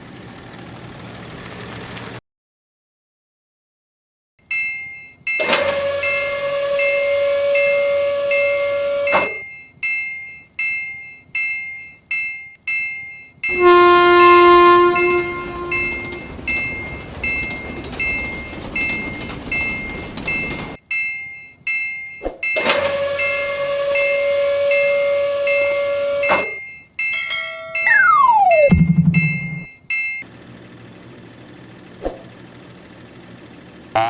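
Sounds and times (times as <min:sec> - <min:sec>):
level-crossing alarm bell dinging: 0:04.4 - 0:30.2
train horn: 0:05.4 - 0:09.4, 0:13.5 - 0:16.2, 0:22.6 - 0:26.5
train passing: 0:12.7 - 0:21.0, 0:22.5 - 0:33.8
sustained steady tone: 0:27.1 - 0:30.1.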